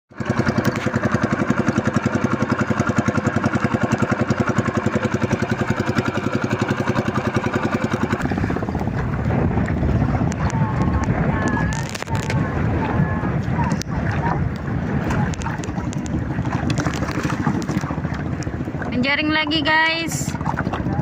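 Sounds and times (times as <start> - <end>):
small boat engine running: 0.1 - 21.0
water noise: 0.1 - 21.0
wind noise: 7.4 - 21.0.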